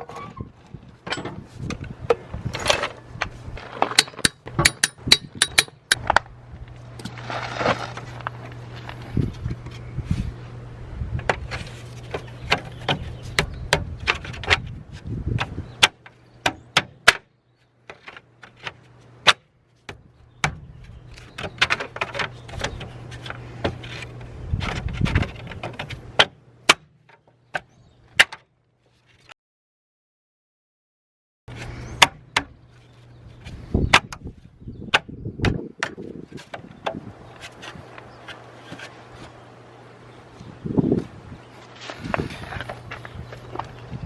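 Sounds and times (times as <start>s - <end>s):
steady low hum: 0.8s - 16.4s.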